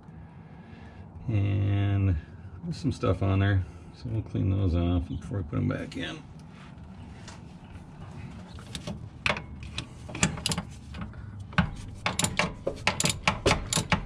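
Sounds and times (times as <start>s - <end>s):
hand tools scraping metal: 9.4s - 14.0s.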